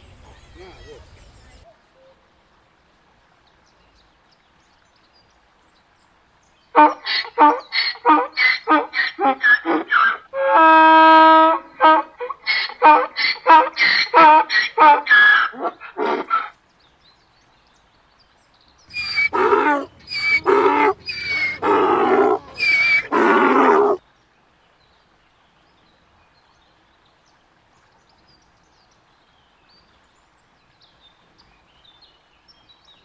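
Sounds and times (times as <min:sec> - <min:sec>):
donkey braying: 0:18.9 - 0:24.0.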